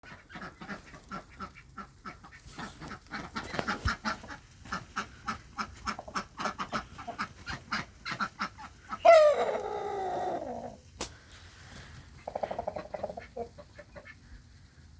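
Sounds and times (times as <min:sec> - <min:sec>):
chickens clucking: 0:00.0 - 0:14.9
long loud falling chicken call: 0:09.0 - 0:10.8.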